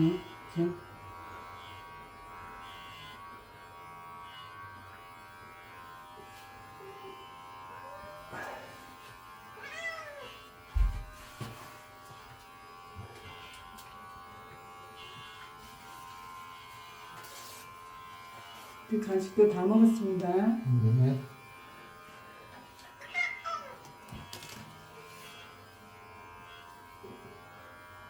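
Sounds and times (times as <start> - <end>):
electric hair clippers buzzing: 0.0 - 28.0
cat meowing: 9.6 - 10.5, 23.0 - 23.9.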